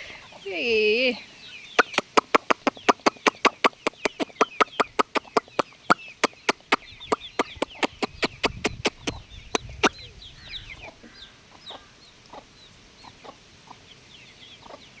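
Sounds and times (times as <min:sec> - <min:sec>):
chickens cheeping: 0:00.0 - 0:15.0
rapid sharp taps: 0:01.8 - 0:09.9.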